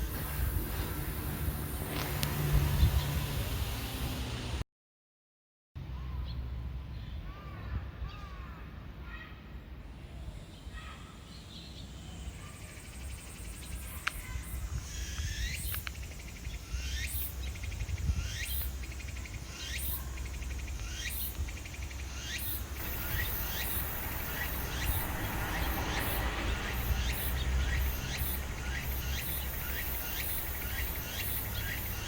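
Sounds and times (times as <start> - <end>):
cicada singing: 0.0 - 4.4, 12.2 - 32.0.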